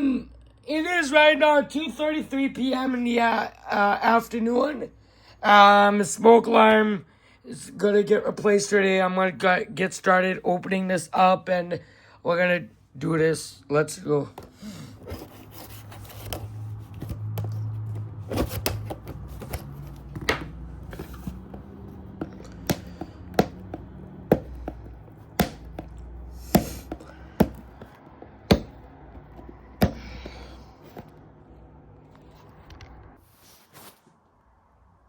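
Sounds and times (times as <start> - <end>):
package handling clicks and knocks: 16.2 - 31.1.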